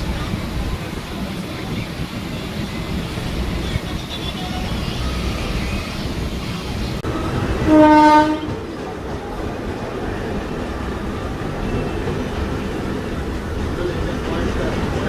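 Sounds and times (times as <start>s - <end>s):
train rumbling on board: 0.0s - 15.0s
train horn blast: 7.1s - 8.6s.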